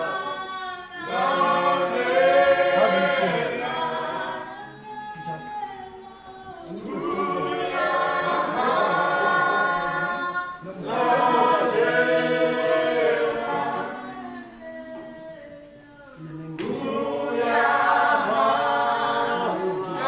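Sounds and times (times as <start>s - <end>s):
group singing a cappella: 0.0s - 20.0s.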